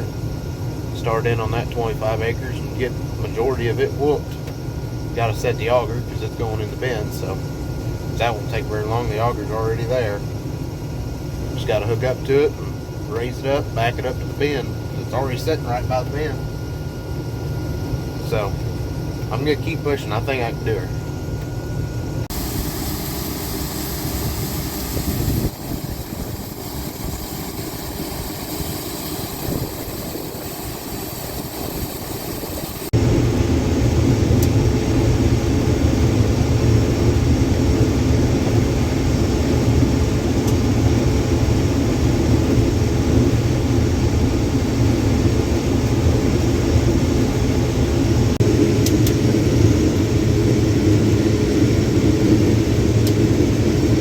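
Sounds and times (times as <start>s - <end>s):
combine harvester running: 22.3s - 34.4s.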